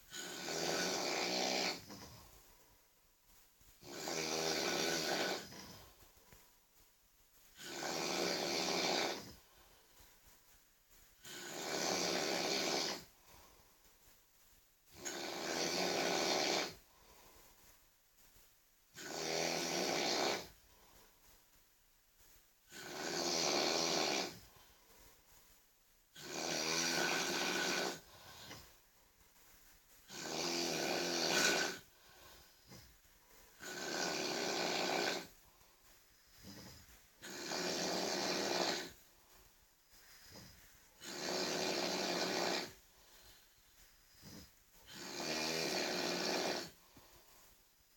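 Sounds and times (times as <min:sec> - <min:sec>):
person snoring loudly: 0:00.1 - 0:02.2, 0:03.8 - 0:05.9, 0:07.6 - 0:09.5, 0:11.2 - 0:13.1, 0:15.0 - 0:16.8, 0:19.0 - 0:20.5, 0:22.7 - 0:24.5, 0:26.2 - 0:28.6, 0:30.1 - 0:32.8, 0:33.6 - 0:35.3, 0:36.3 - 0:39.0, 0:40.3 - 0:42.8, 0:44.1 - 0:46.8.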